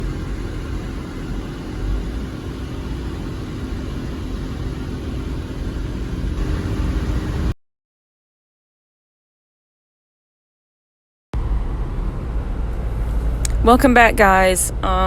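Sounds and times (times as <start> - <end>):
faint hum: 0.0 - 7.6
vehicle engine rumbling: 0.0 - 7.6, 11.4 - 15.0.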